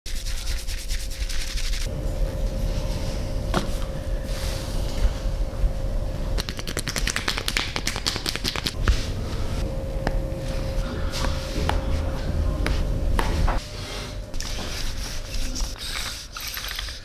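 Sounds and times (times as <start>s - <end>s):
low hum: 1.7s - 7.0s, 8.6s - 15.8s.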